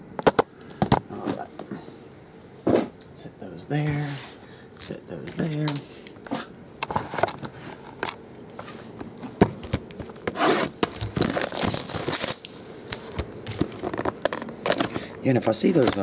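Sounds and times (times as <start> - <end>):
packaging tearing and crinkling: 9.6 - 16.0.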